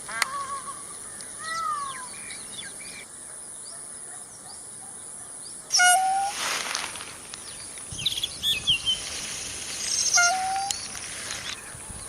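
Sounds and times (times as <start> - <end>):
bird chirping: 0.2 - 6.3, 7.4 - 12.0
steady high hiss: 5.4 - 12.0
harsh buzzy bird call: 5.7 - 6.5, 9.7 - 11.8.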